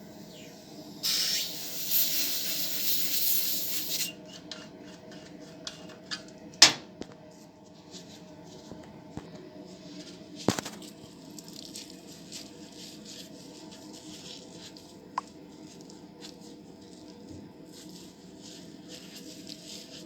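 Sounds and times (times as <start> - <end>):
low hum: 0.0 - 1.2
steady hiss: 0.0 - 4.2.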